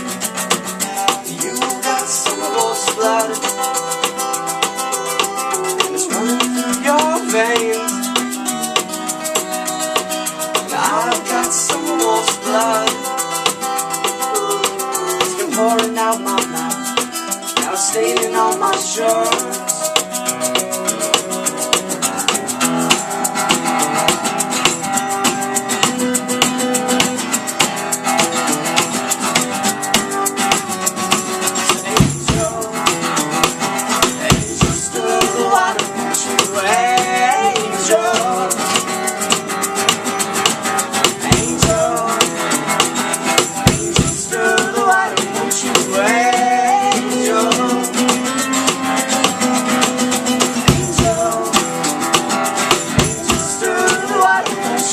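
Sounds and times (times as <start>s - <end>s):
fast shaker rhythm: 0.0s - 54.9s
guitar: 0.0s - 54.9s.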